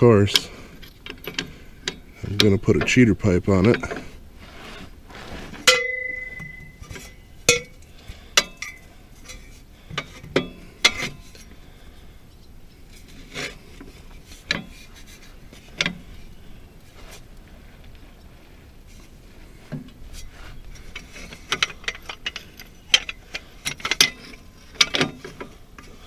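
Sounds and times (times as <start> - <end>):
metal pipe and wrench clanking: 5.6 - 11.5, 13.0 - 16.2, 20.1 - 26.0.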